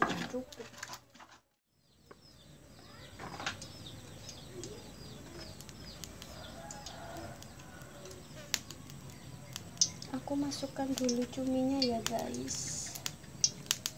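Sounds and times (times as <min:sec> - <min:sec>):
small birds chirping: 0:01.7 - 0:13.9
sharp crackles: 0:02.0 - 0:13.9
oil sizzling in a frying pan: 0:05.0 - 0:13.9.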